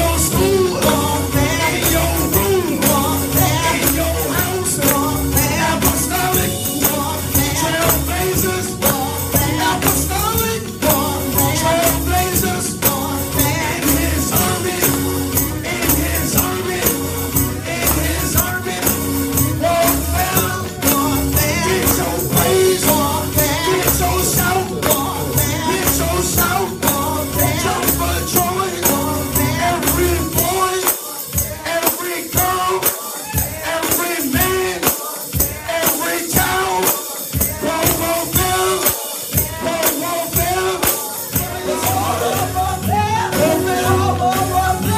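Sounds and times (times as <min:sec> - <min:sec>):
bass: 0:00.0 - 0:30.7, 0:41.4 - 0:44.9
gospel praise music: 0:00.0 - 0:44.9
people singing: 0:00.0 - 0:44.9
tambourine shaken rhythmically: 0:00.0 - 0:44.9.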